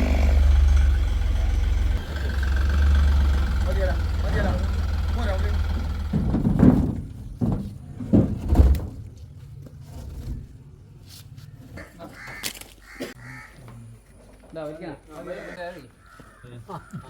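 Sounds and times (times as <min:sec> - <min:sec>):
crows cawing: 0:11.8 - 0:13.7, 0:15.1 - 0:17.0.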